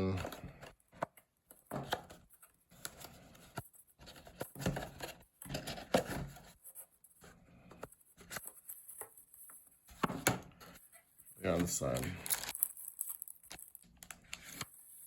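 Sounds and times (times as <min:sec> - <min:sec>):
packaging rustling and clicking: 0:11.5 - 0:15.0.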